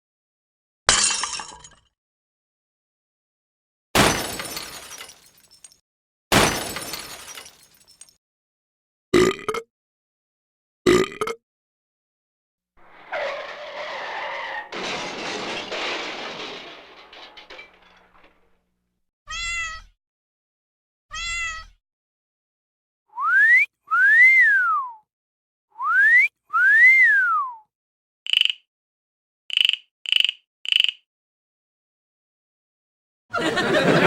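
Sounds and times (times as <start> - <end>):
cat meows: 19.3 - 20.0, 21.1 - 21.8
wolf whistle: 23.1 - 25.0, 25.8 - 27.6.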